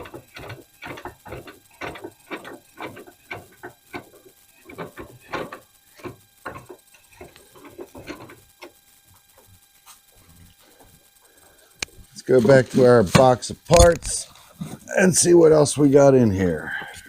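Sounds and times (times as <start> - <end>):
parts and tools clicking: 0.0 - 9.5.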